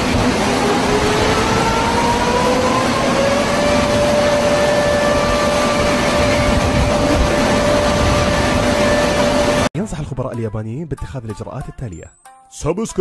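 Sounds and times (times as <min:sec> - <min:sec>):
outdoor warning siren: 0:00.0 - 0:09.7.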